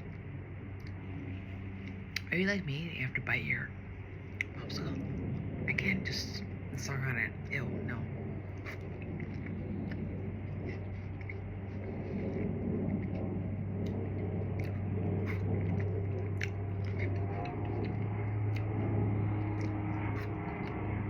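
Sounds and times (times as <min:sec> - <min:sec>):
steady low hum: 0:00.0 - 0:21.0
teeth crunching on ice: 0:08.5 - 0:21.0.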